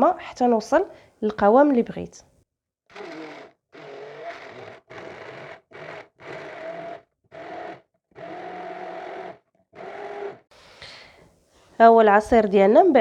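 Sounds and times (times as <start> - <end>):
electric blender running: 2.9 - 10.4.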